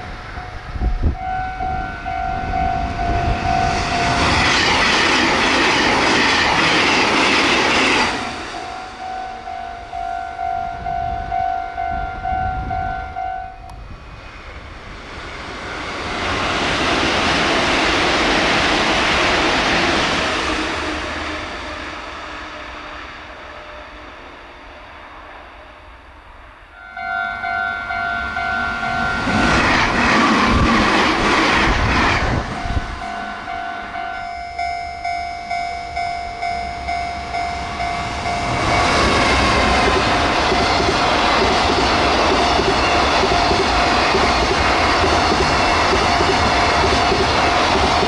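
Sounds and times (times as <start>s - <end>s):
level-crossing warning bell: 0.0s - 14.0s, 26.7s - 30.1s, 32.5s - 48.0s
train passing: 0.0s - 48.0s.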